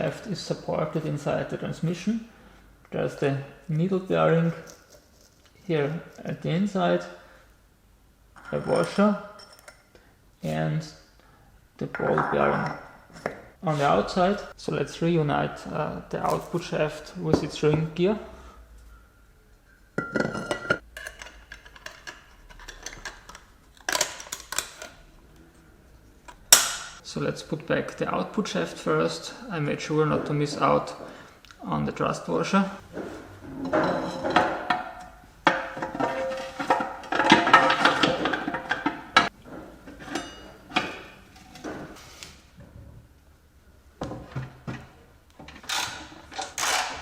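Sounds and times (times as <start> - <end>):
steel parts clinking and scraping: 33.4 - 39.3, 45.6 - 47.0.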